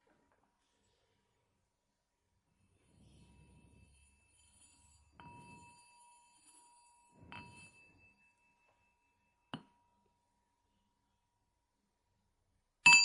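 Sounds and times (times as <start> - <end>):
small metal bell ringing: 2.9 - 10.3.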